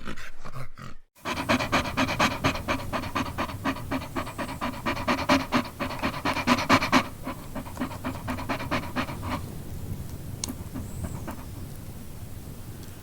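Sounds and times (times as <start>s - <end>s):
dog panting rapidly: 1.2s - 9.6s, 10.5s - 11.6s.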